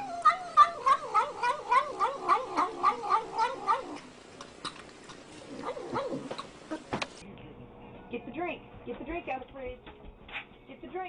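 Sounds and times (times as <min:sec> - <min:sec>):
pet animal wavering calls: 0:00.0 - 0:04.1, 0:05.5 - 0:06.9.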